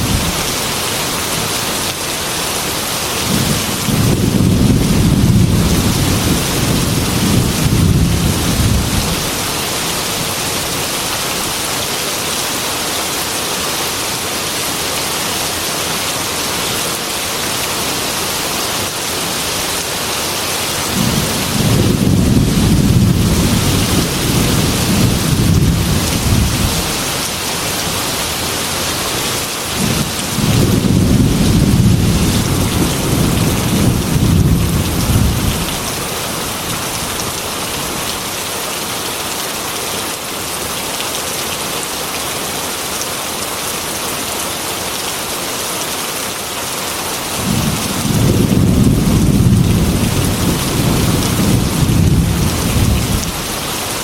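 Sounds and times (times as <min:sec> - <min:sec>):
heavy rain on a metal roof: 0:00.0 - 0:54.0
rolling thunder: 0:03.2 - 0:09.4, 0:20.9 - 0:27.1, 0:29.8 - 0:36.0, 0:47.4 - 0:53.5.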